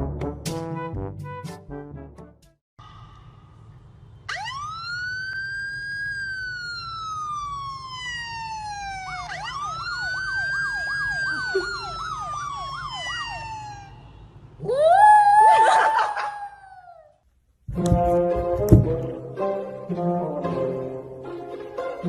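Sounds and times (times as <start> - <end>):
siren wailing: 4.3 - 17.0
siren yelp: 4.3 - 17.0.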